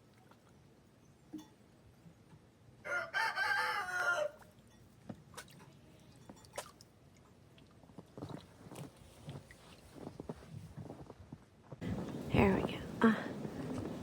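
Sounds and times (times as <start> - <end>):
rooster crowing: 2.8 - 4.5
soft crunching: 7.9 - 14.0.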